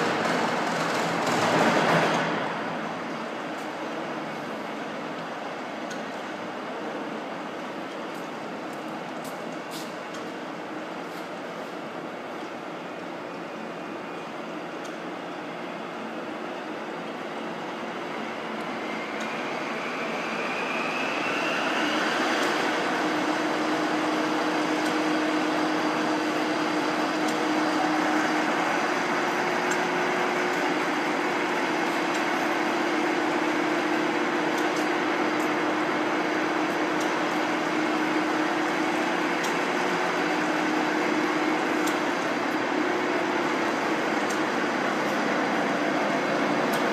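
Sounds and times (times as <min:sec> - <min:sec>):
lathe running: 0:19.4 - 0:46.9.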